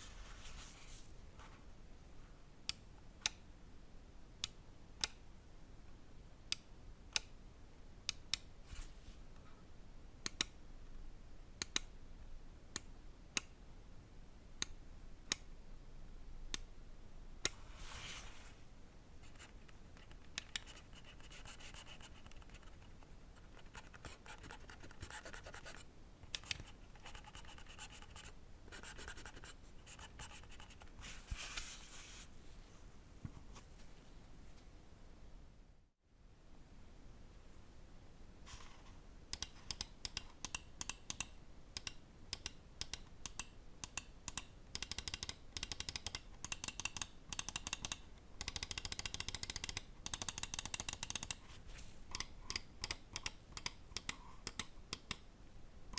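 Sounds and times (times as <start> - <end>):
mouse buttons clicking: 39.3 - 51.4, 52.1 - 55.3
scroll wheel ticking: 39.3 - 51.4, 52.1 - 55.2.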